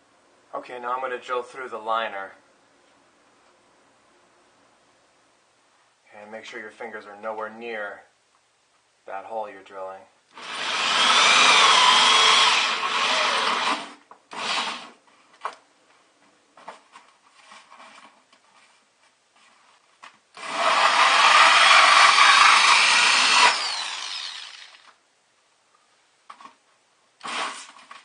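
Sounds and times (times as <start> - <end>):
power drill with hole saw cutting: 10.3 - 14.9, 20.4 - 25.0, 27.2 - 27.8
small knocks and handling noises: 15.0 - 20.3, 26.2 - 26.8.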